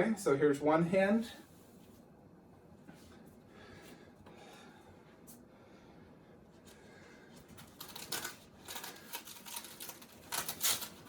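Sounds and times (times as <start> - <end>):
packaging rustling and crinkling: 7.5 - 11.0.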